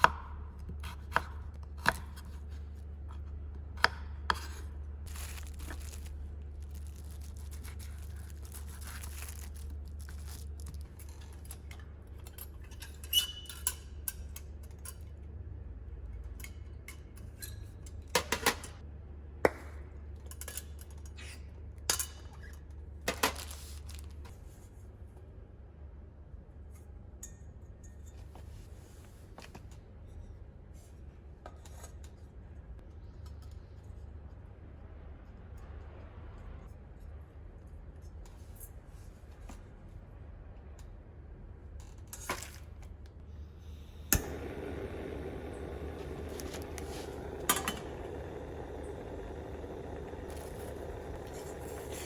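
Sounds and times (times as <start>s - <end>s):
low hum: 43.3s - 52.0s.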